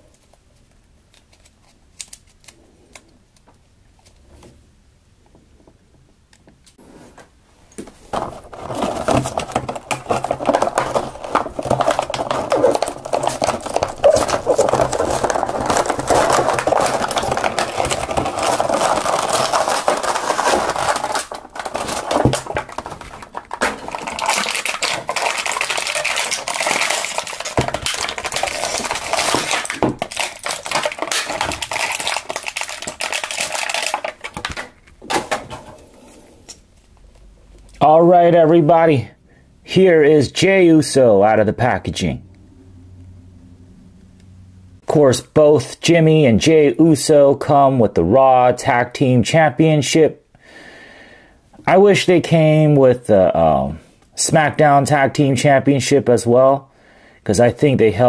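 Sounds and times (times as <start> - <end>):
plastic and cardboard crinkling: 7.7 - 35.8.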